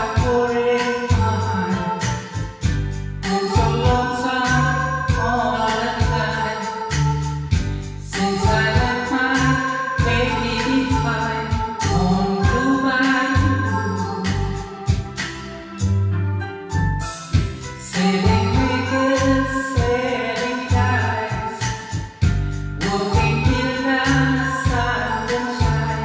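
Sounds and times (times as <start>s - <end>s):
bass line: 0.0s - 26.0s
steady drum beat: 6.0s - 12.8s, 13.4s - 15.9s, 17.0s - 20.1s
voices singing: 8.1s - 15.8s.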